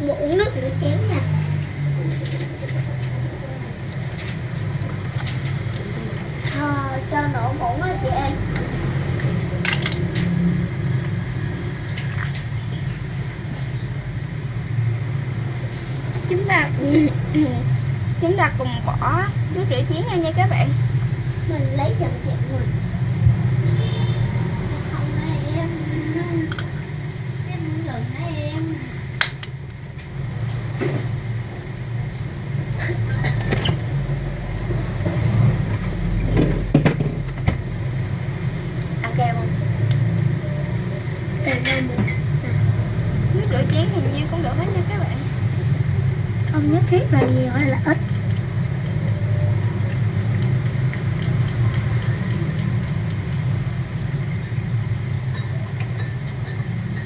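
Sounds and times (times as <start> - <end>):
low background hum: 0.0 - 57.0
spoon stirring glue: 47.7 - 54.6
spoon clicking against bowl: 48.1 - 53.6.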